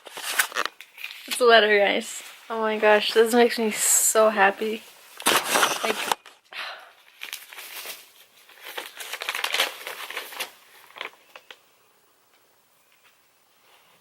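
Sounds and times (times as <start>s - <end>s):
paper rustling and crinkling: 0.0s - 1.6s, 4.8s - 6.4s, 7.1s - 11.6s.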